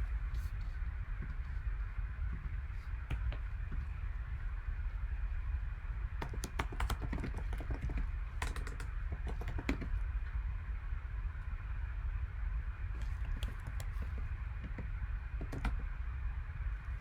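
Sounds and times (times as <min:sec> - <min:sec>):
steady low hum: 0:00.0 - 0:17.0
typing on computer keyboard: 0:06.2 - 0:09.9, 0:14.6 - 0:15.8.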